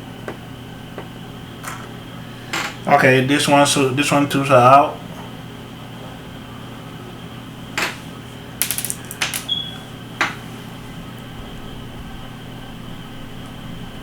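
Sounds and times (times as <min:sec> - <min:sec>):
small plastic parts clicking: 0:08.6 - 0:09.5.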